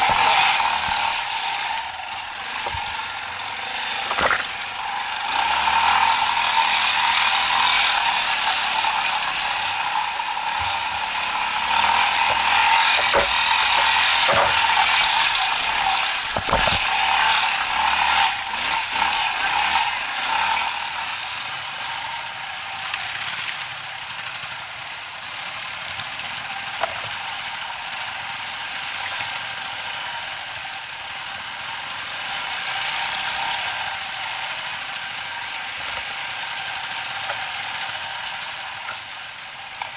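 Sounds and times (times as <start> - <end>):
off-road motorcycle engine: 0.0 - 39.9
sharp knocks: 4.0 - 4.5.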